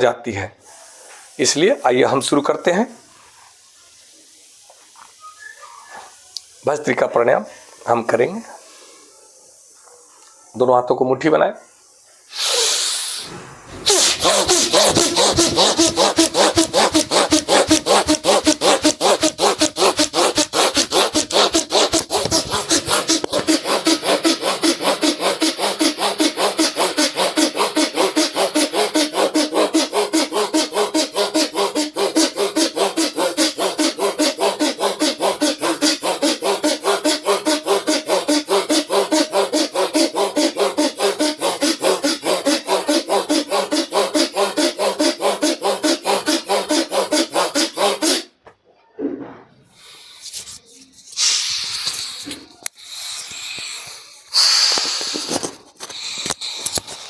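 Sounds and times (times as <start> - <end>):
rapid forceful nose breathing: 12.3 - 48.3, 51.1 - 57.0.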